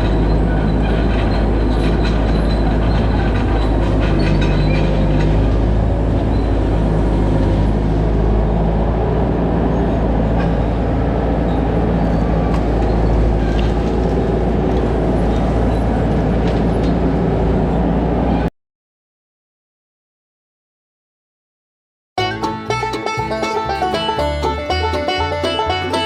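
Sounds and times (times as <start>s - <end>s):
skid steer engine running: 0.0s - 9.5s, 22.2s - 26.0s.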